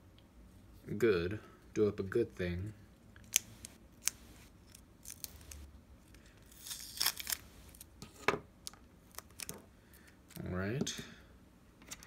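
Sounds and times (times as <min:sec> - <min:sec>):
crinkly tearing and scraping: 0:04.0 - 0:07.9.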